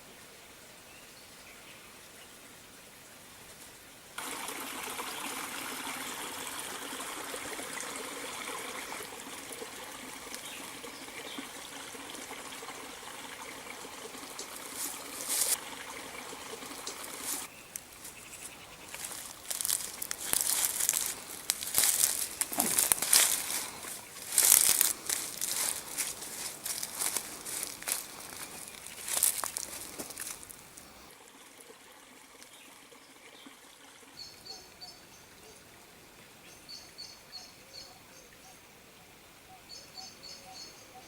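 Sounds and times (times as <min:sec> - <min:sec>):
water trickling: 0:04.2 - 0:38.4
crackling and crunching: 0:18.9 - 0:30.6.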